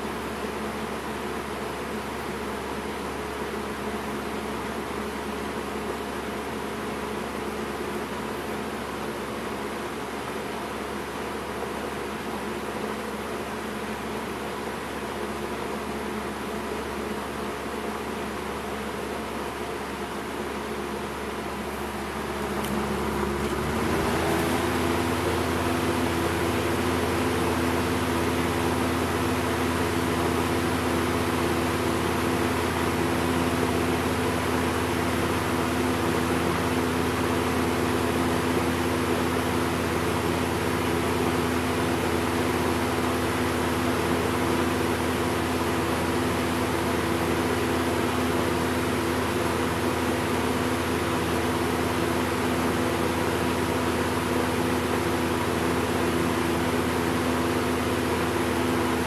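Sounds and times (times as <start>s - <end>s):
box fan air rushing: 19.2s - 59.0s
low motor hum: 21.1s - 37.7s.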